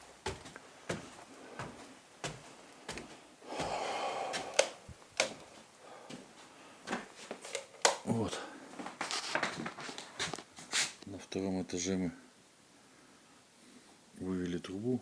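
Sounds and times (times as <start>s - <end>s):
footsteps climbing stairs: 0.0s - 7.1s
rustling or scraping: 8.8s - 11.0s.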